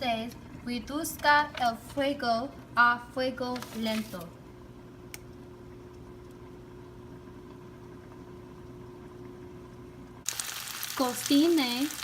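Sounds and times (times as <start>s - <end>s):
food sizzling in a pan: 10.2s - 12.0s.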